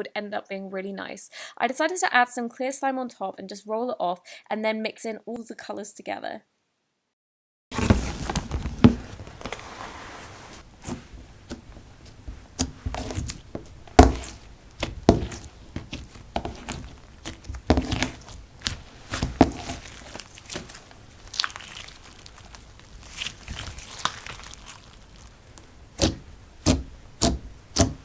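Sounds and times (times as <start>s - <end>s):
slime squished by hand: 10.8s - 28.0s.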